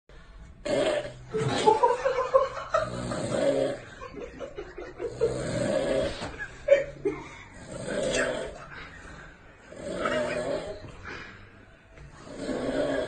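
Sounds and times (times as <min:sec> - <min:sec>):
man snoring loudly: 0:00.6 - 0:01.8, 0:02.7 - 0:04.2, 0:05.0 - 0:08.7, 0:09.6 - 0:10.9, 0:12.2 - 0:13.0.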